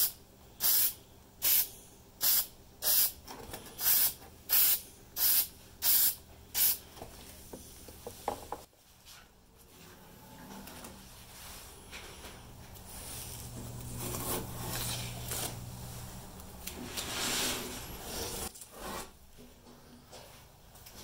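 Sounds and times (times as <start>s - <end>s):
spray paint can hissing: 0.0s - 3.2s, 3.8s - 6.8s.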